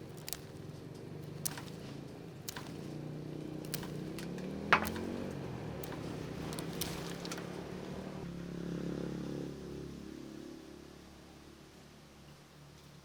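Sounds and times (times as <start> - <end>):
sharp clicks: 0.0 - 3.0, 3.6 - 7.5
small engine running: 0.0 - 10.4.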